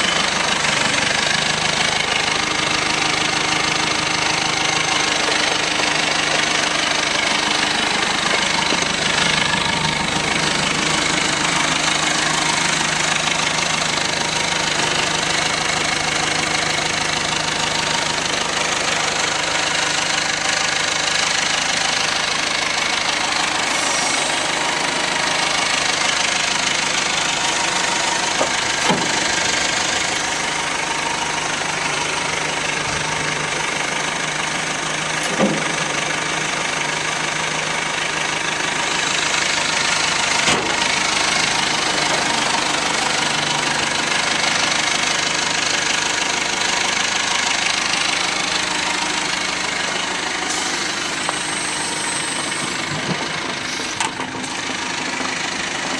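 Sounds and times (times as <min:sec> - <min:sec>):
diesel engine running: 0:00.0 - 0:55.9.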